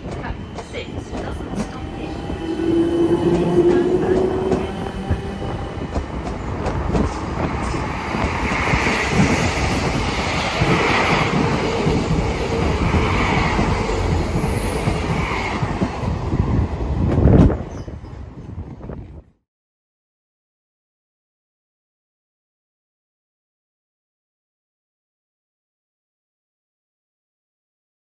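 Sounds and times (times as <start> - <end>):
rail joints clattering: 0.0 - 18.3
train wheel and rail rumble: 0.0 - 19.3.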